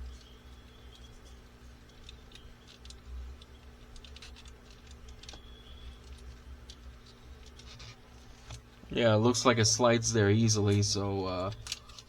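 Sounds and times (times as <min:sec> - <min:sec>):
plastic toy parts clicking: 0:01.8 - 0:08.6, 0:11.4 - 0:12.0.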